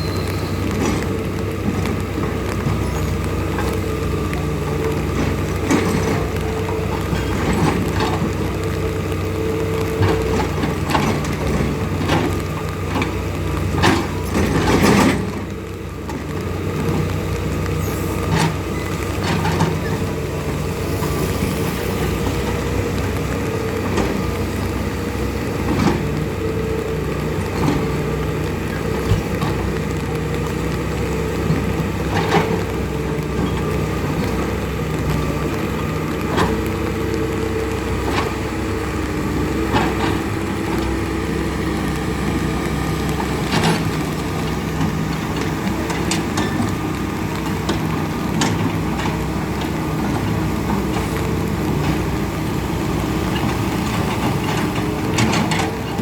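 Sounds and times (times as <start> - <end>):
heavy engine running: 0.0 - 56.0.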